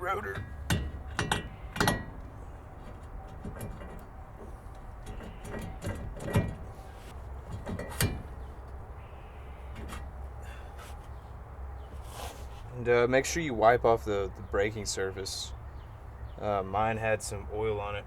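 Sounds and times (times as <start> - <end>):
steady low hum: 0.0 - 16.3
metal knocks and clatters: 0.2 - 8.8.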